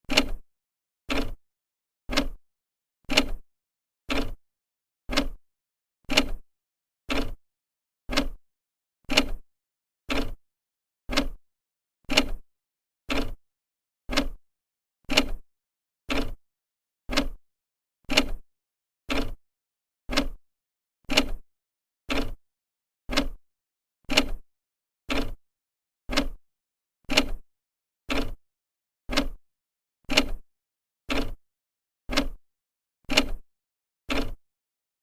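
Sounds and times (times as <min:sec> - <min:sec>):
clock ticking: 0:02.1 - 0:02.4, 0:05.1 - 0:05.4, 0:08.1 - 0:08.4, 0:11.1 - 0:11.4, 0:14.1 - 0:14.4, 0:26.1 - 0:26.4, 0:29.1 - 0:29.4, 0:32.1 - 0:32.4, 0:34.1 - 0:34.4.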